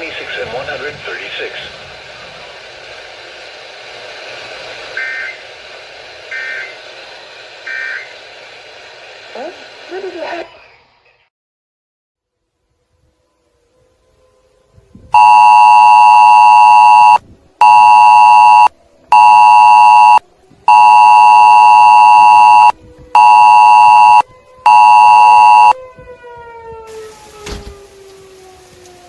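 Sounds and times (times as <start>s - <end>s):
faint rising and falling siren: 12.3s - 29.0s
emergency alert beeps: 15.2s - 25.8s
rain: 26.9s - 29.0s.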